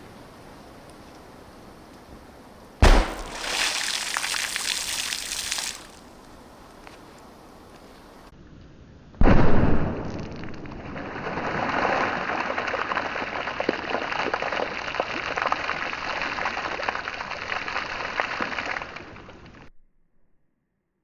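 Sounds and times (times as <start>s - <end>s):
firecracker bang: 2.8s - 4.2s.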